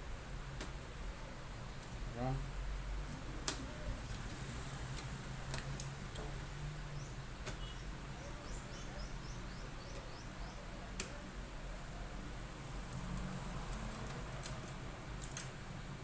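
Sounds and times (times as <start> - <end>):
bird chirping: 6.9 - 10.9.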